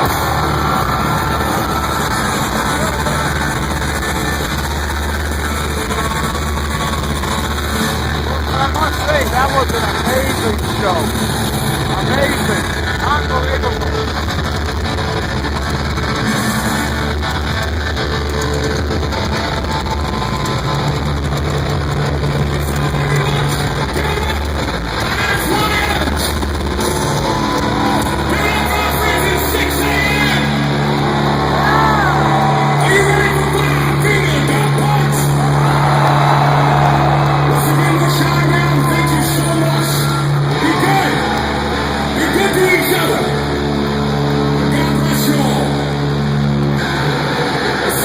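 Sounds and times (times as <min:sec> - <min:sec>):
loud music with singing: 0:00.0 - 0:09.1.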